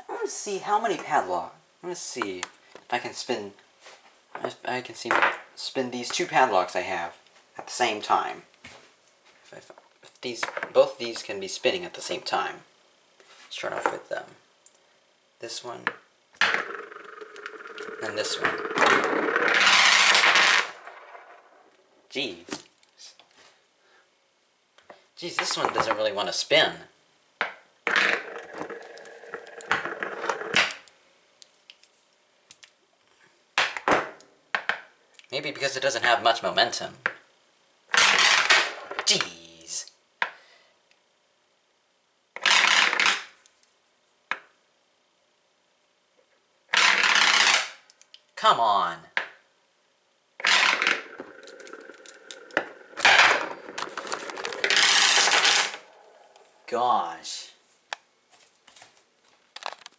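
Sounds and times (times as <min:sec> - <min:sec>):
padlock spinning and rattling: 0:16.6 - 0:21.8, 0:28.1 - 0:30.8, 0:46.8 - 0:48.0, 0:50.4 - 0:56.6.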